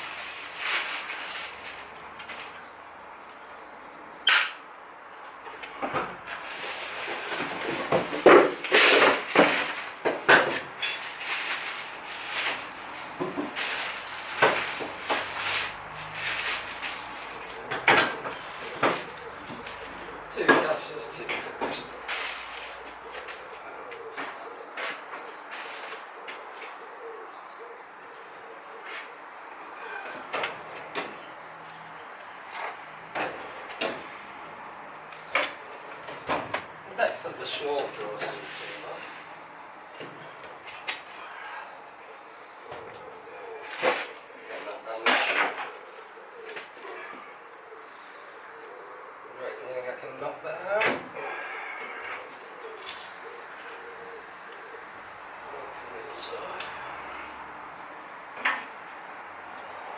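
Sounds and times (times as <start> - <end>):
packaging rustling and scraping: 0.0 - 2.6, 6.2 - 23.5.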